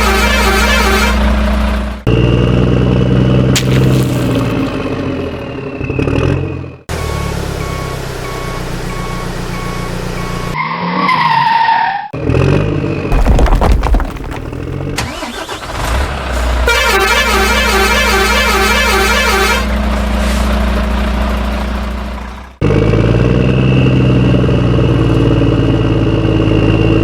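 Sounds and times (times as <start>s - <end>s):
truck horn blast: 0.0s - 1.7s, 16.4s - 19.9s
truck engine hum: 0.0s - 27.0s
beeping warning tone: 5.8s - 10.7s.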